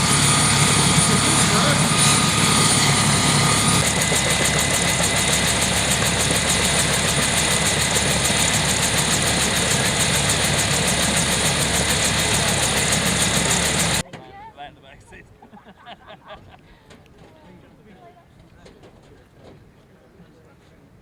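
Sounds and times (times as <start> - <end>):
helicopter running: 0.0 - 14.0.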